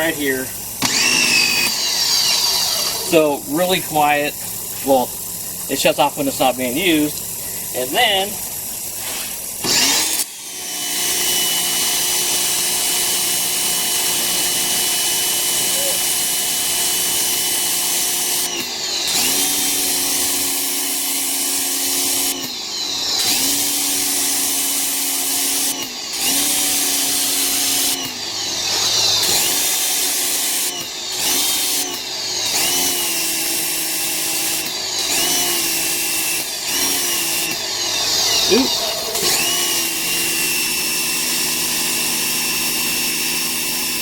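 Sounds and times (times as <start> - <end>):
pressure washer motor hum: 0.0 - 44.0
water jet hissing: 2.7 - 9.6.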